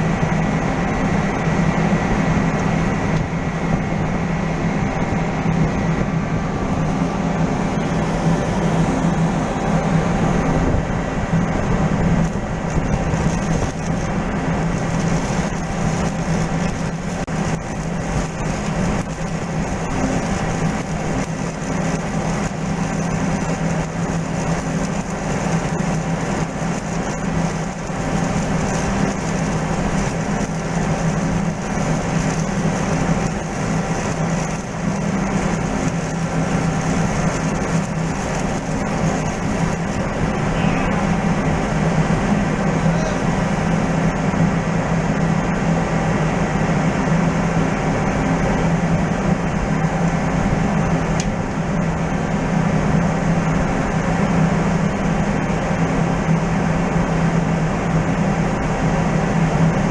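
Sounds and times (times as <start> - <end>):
machinery humming: 0.0 - 59.9
small crackling clicks: 12.2 - 41.9.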